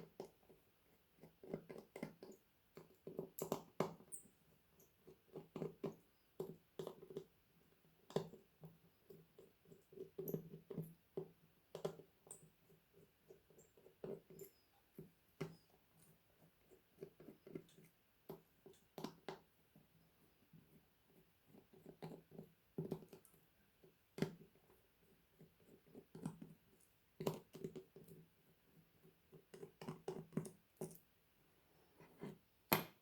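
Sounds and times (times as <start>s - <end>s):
faint clicks and taps of tools: 7.9s - 19.9s, 21.6s - 24.8s, 25.4s - 31.1s.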